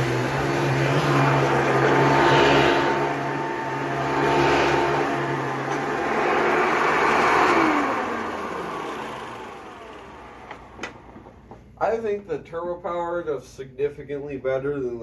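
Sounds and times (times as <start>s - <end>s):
motor winding down whine: 0.0s - 11.4s
upright vacuum cleaner running: 0.0s - 11.6s.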